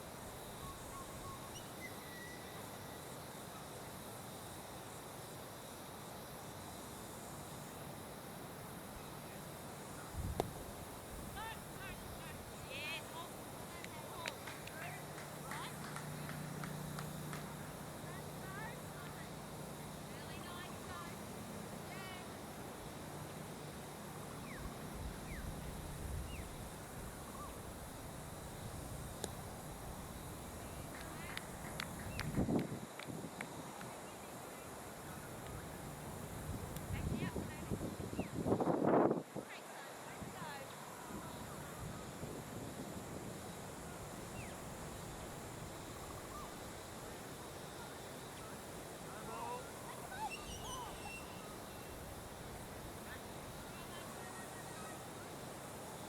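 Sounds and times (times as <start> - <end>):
faint high-pitched tone: 0.5 - 3.6
bird calling in falling notes: 49.6 - 51.5.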